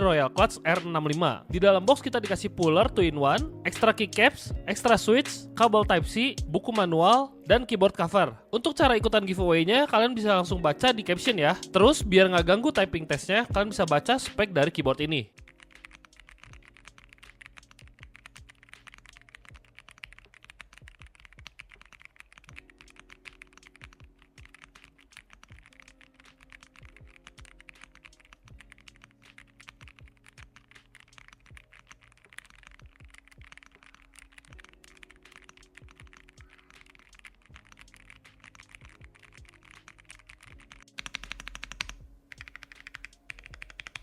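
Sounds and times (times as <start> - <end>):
mechanical keyboard typing: 15.0 - 44.0.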